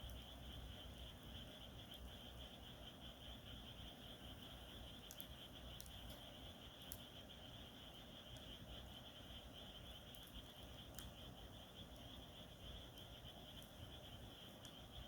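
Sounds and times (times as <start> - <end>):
crickets chirping: 0.0 - 15.0
campfire crackling: 4.6 - 15.0.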